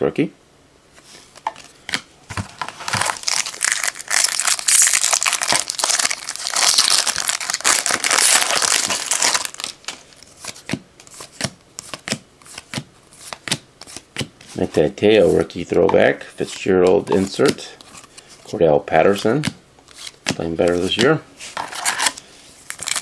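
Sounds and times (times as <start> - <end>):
foil wrapper tearing and crinkling: 2.8 - 9.8, 22.7 - 23.0.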